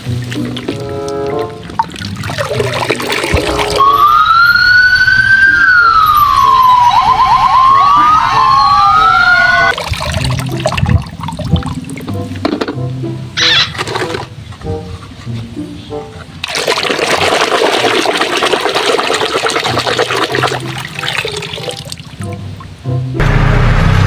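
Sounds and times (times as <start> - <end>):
background music: 0.0 - 16.4, 20.5 - 24.0
electronic siren wailing: 3.4 - 9.8.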